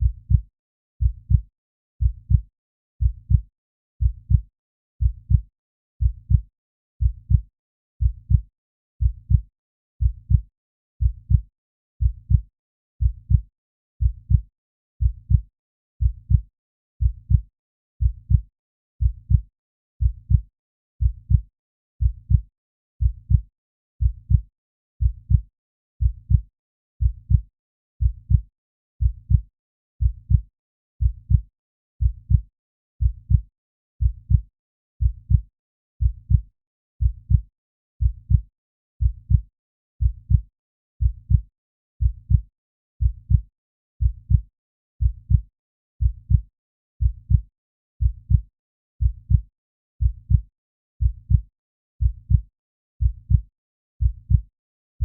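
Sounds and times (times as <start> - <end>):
heartbeat double thumps: 0.0 - 0.4, 1.0 - 1.4, 2.0 - 2.4, 3.0 - 3.4, 4.0 - 4.4, 5.0 - 5.4, 6.0 - 6.4, 7.0 - 7.4, 8.0 - 8.4, 9.0 - 9.4, 10.0 - 10.4, 11.0 - 11.4, 12.0 - 12.4, 13.0 - 13.4, 14.0 - 14.4, 15.0 - 15.4, 16.0 - 16.4, 17.0 - 17.4, 18.0 - 18.4, 19.0 - 19.4, 20.0 - 20.4, 21.0 - 21.4, 22.0 - 22.4, 23.0 - 23.4, 24.0 - 24.4, 25.0 - 25.4, 26.0 - 26.4, 27.0 - 27.4, 28.0 - 28.4, 29.0 - 29.4, 30.0 - 30.4, 31.0 - 31.4, 32.0 - 32.4, 33.0 - 33.4, 34.0 - 34.4, 35.0 - 35.4, 36.0 - 36.4, 37.0 - 37.4, 38.0 - 38.4, 39.0 - 39.4, 40.0 - 40.4, 41.0 - 41.4, 42.0 - 42.4, 43.0 - 43.4, 44.0 - 44.4, 45.0 - 45.4, 46.0 - 46.4, 47.0 - 47.4, 48.0 - 48.4, 49.0 - 49.4, 50.0 - 50.4, 51.0 - 51.4, 52.0 - 52.4, 53.0 - 53.4, 54.0 - 54.4.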